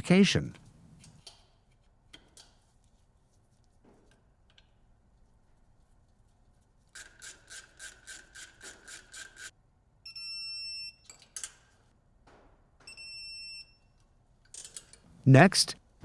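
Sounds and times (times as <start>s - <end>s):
wrench ratcheting: 7.0s - 9.5s.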